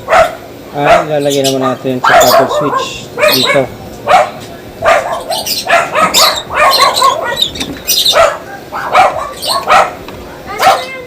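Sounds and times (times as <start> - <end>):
dog barking: 0.0 - 11.0.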